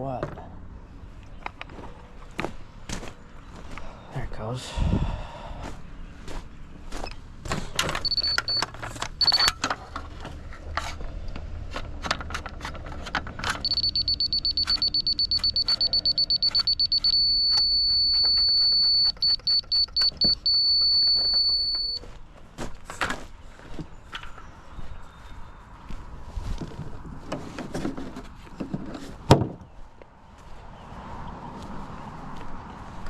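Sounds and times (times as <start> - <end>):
high electronic beeps: 8.0 - 9.5, 13.6 - 22.0.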